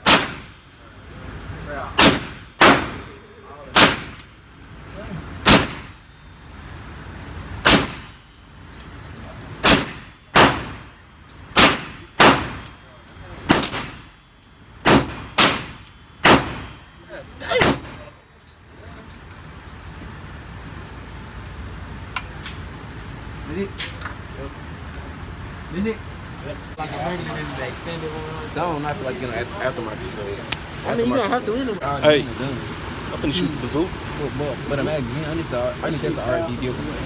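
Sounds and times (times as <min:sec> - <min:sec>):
echoing gunshots: 0:00.0 - 0:00.7, 0:02.0 - 0:03.1, 0:03.8 - 0:04.3, 0:05.4 - 0:06.0, 0:07.6 - 0:08.2, 0:09.7 - 0:10.9, 0:11.6 - 0:12.7, 0:14.9 - 0:16.8.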